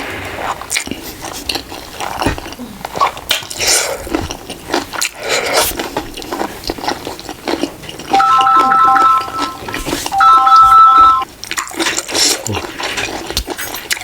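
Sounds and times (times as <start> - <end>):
biting and chewing with crunches: 0.0 - 8.2, 11.4 - 14.0
electronic three-note tune: 8.1 - 9.6, 10.2 - 11.2.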